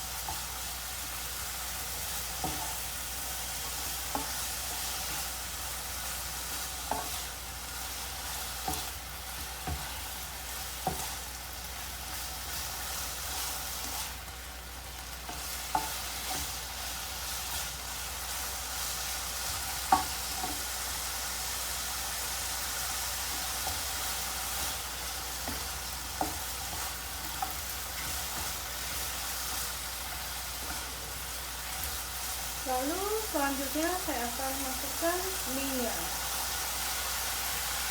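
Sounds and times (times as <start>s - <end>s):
meat sizzling while stir-fried: 0.0s - 37.9s.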